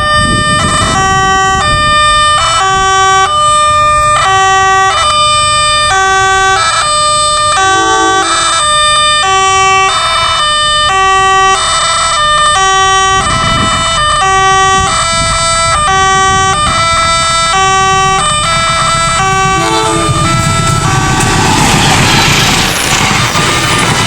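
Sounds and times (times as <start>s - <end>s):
level crossing warning siren: 0.0s - 24.0s
low rumble: 16.8s - 24.0s.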